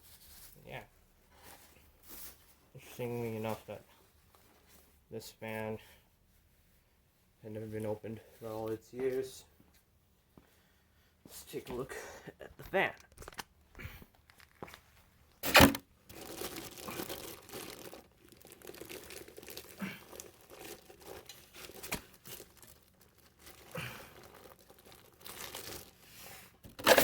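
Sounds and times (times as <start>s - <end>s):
packaging rustling and crinkling: 13.0s - 27.0s.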